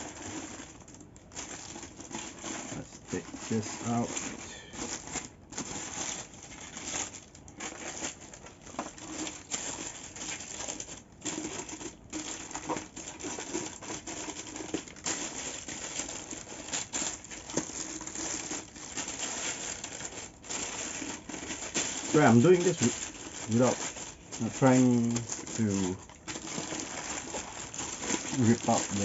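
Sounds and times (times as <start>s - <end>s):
packaging wrap rustling: 0.0s - 29.0s.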